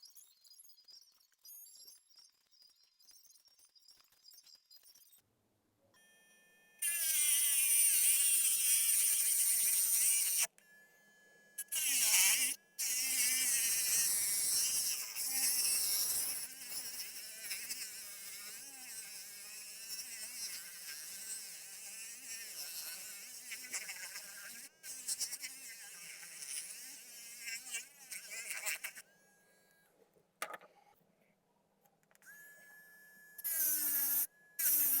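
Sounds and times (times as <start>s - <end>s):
small electric motor buzzing: 6.0s - 29.8s, 32.2s - 35.0s.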